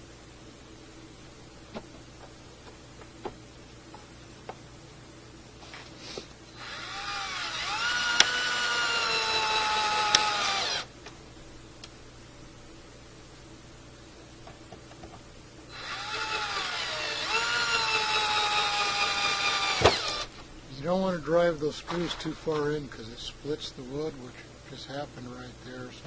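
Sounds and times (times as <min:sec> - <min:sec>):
cordless drill motor whine: 0:06.6 - 0:10.9, 0:15.7 - 0:20.3.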